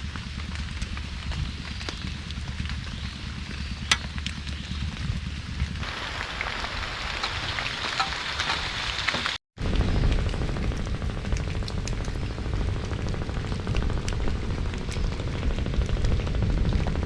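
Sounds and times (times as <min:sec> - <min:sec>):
low rumble: 0:00.0 - 0:08.8, 0:09.6 - 0:17.0
heavy rain falling: 0:05.4 - 0:17.0.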